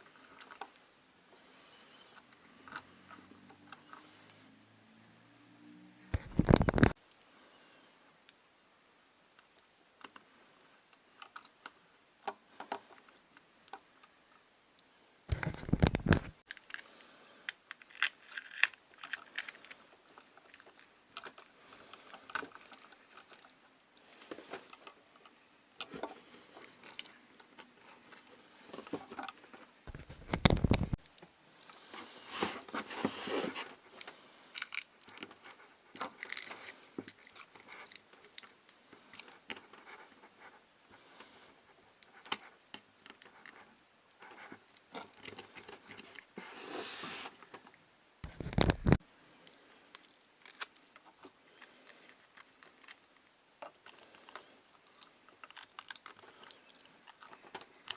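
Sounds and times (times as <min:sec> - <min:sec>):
handling clicks and crinkling: 0:06.2 - 0:07.3, 0:10.9 - 0:14.4, 0:15.3 - 0:46.4, 0:47.3 - 0:57.9.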